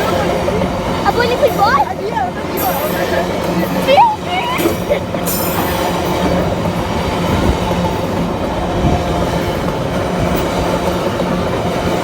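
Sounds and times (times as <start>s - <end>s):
freight train rumbling over rails: 0.0s - 12.0s.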